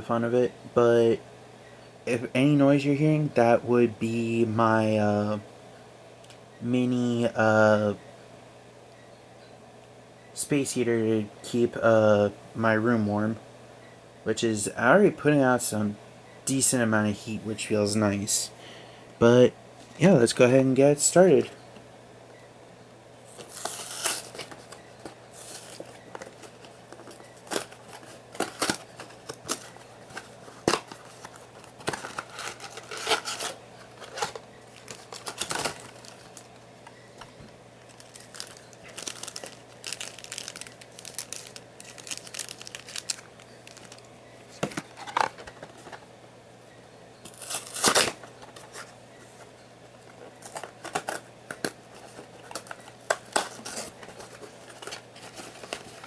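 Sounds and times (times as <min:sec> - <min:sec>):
faint low heater hum: 0:00.0 - 0:56.0
packaging torn and crinkled: 0:23.4 - 0:24.6, 0:25.4 - 0:36.5, 0:37.8 - 0:44.1, 0:47.3 - 0:48.2.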